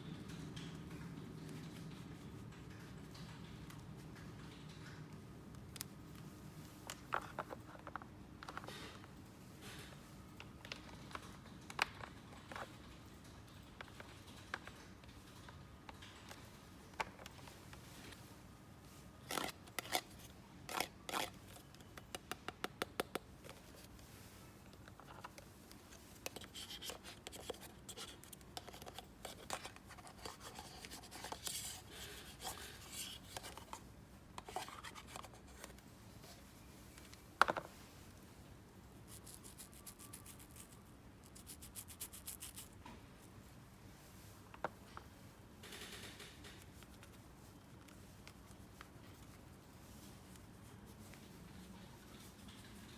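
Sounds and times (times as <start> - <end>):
scratching and rubbing: 39.1 - 42.8.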